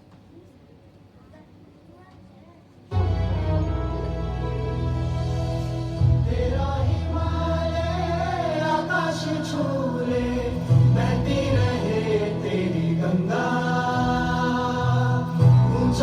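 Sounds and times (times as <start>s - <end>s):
steady low bass: 3.0s - 8.6s, 10.1s - 12.6s, 13.9s - 16.0s
choir singing long gliding notes: 3.3s - 16.0s.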